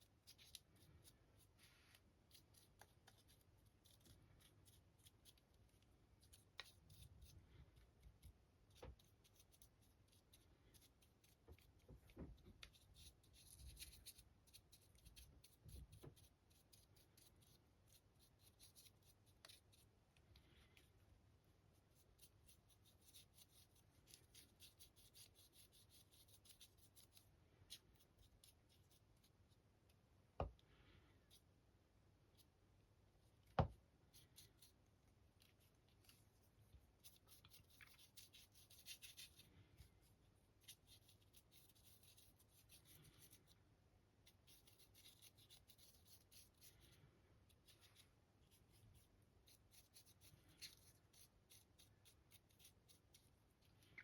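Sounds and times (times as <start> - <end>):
paintbrush scrubbing: 33.2 - 43.6, 44.2 - 54.0.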